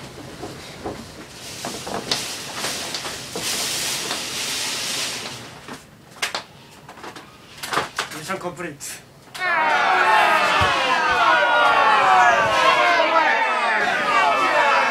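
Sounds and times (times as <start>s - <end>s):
storm shutters knocking and rattling: 0.0s - 4.3s.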